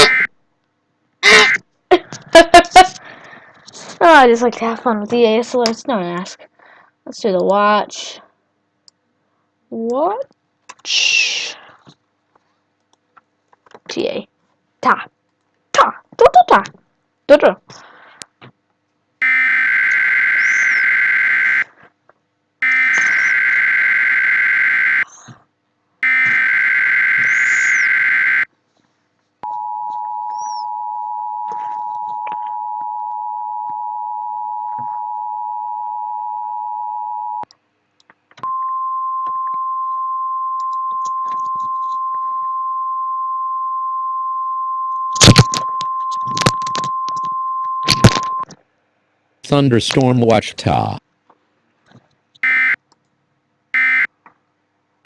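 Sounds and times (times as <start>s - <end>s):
buzzing data tones: 19.2s - 21.7s, 22.6s - 25.0s, 26.0s - 28.5s
steady attention tone: 19.2s - 21.7s, 22.6s - 25.1s, 26.0s - 28.5s.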